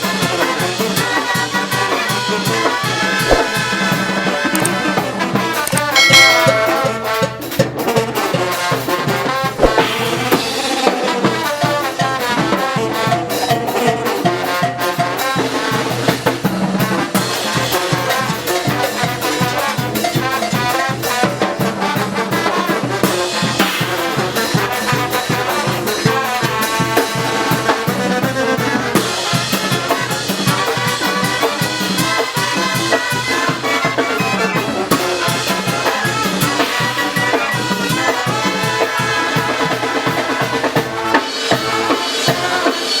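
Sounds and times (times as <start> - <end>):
brass band playing: 0.0 - 43.0
driving drum beat: 0.0 - 43.0.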